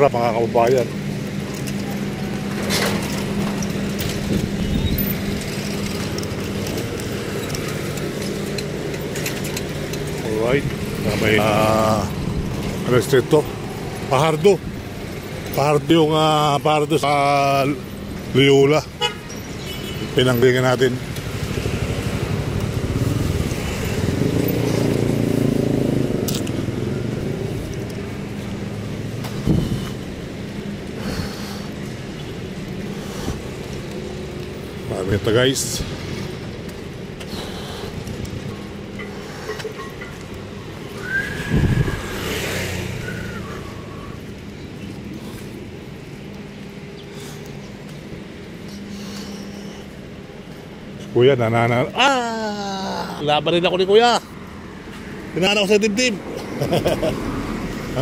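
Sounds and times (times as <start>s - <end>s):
street traffic engine hum: 0.0s - 58.0s
vehicle engine passing: 20.2s - 46.2s.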